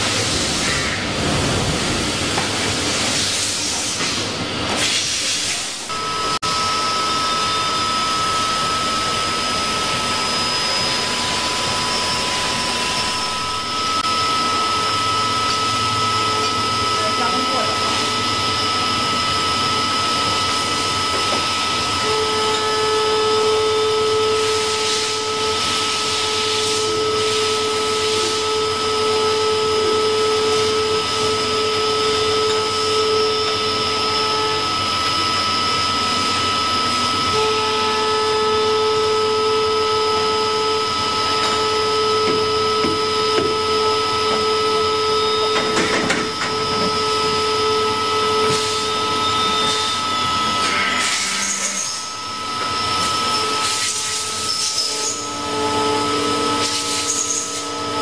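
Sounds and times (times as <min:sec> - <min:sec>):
cnc machine whining: 0:00.0 - 0:58.0.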